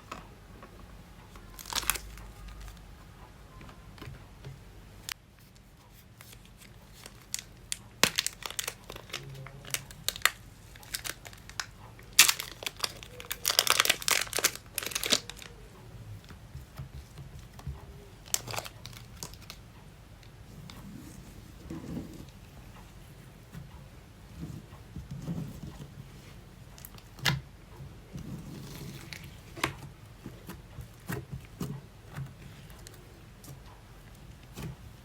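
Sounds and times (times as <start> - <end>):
sticky crackling and popping: 1.2 - 3.0, 3.9 - 26.0.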